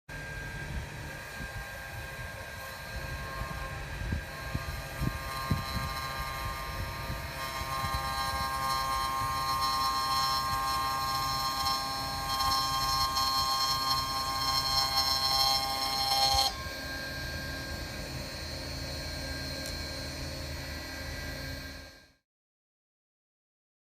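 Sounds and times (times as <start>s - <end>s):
sewing machine whine: 0.1s - 22.2s.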